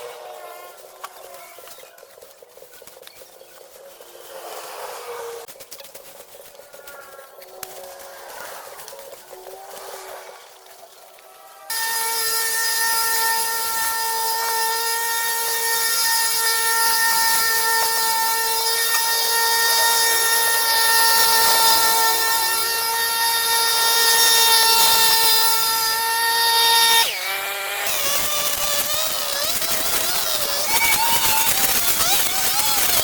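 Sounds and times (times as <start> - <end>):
power tool motor running: 11.3 - 33.0.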